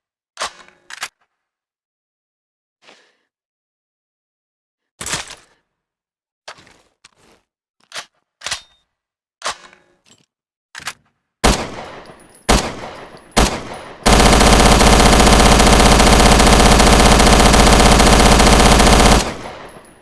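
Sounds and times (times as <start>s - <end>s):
automatic gunfire: 11.4s - 20.0s
submachine gun shots: 11.4s - 20.0s
submachine gun clacks: 11.5s - 20.0s.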